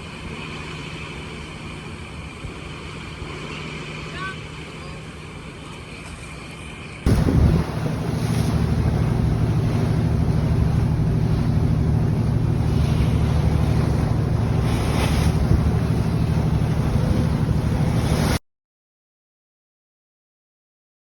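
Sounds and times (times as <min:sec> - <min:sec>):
boat engine running: 0:07.1 - 0:18.4
water wash: 0:07.1 - 0:18.4
wind buffeting microphone: 0:07.1 - 0:18.4.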